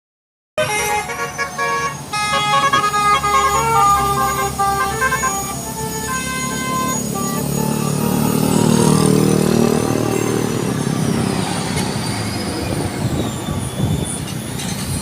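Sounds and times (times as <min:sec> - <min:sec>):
multi-tone musical horn: 0:00.6 - 0:11.6
engine humming: 0:00.6 - 0:15.0.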